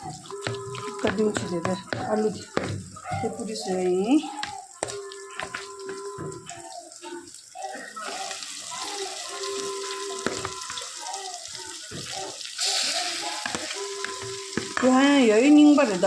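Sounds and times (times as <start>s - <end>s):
tap running into sink: 10.2s - 10.9s, 13.3s - 15.2s.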